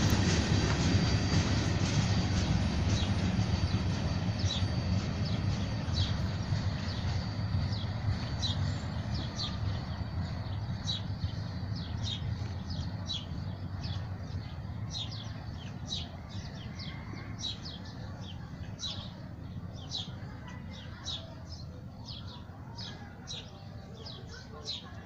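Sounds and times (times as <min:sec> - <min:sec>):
freight train rumbling: 0:00.0 - 0:25.0
bird chirping: 0:02.4 - 0:19.1.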